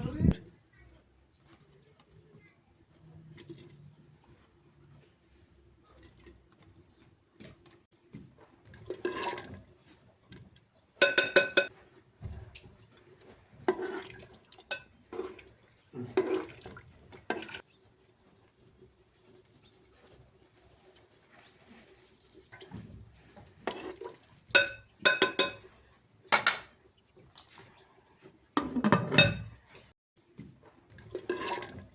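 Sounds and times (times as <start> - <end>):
water: 0.4 - 31.9
dishes and utensils clattering: 11.0 - 11.7, 23.6 - 27.7, 28.6 - 29.9.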